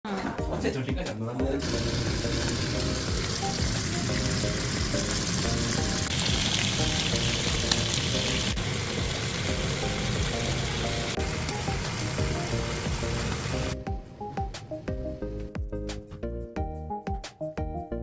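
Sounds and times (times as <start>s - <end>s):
food sizzling in a pan: 1.6s - 13.8s.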